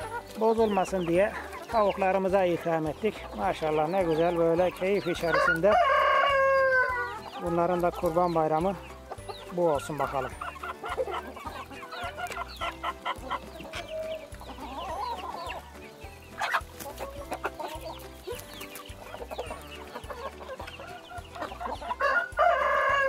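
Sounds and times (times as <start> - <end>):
hens clucking: 0.0 - 23.0
rooster crowing: 5.3 - 7.1, 22.0 - 23.0.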